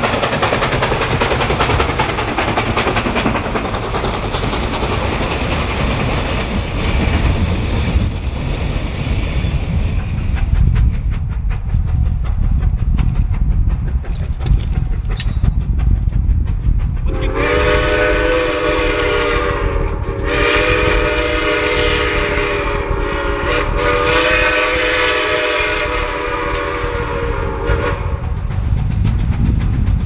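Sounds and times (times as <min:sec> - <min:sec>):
low rumble of passing train: 0:00.0 - 0:30.0
steam locomotive chime whistle: 0:17.1 - 0:28.2.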